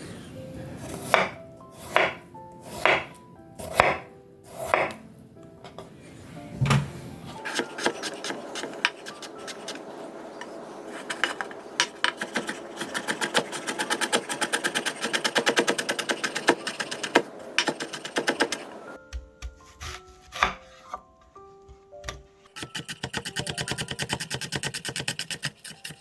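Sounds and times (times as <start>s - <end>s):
knife chopping on cutting board: 0.9s - 5.0s, 7.4s - 9.6s, 12.0s - 20.8s.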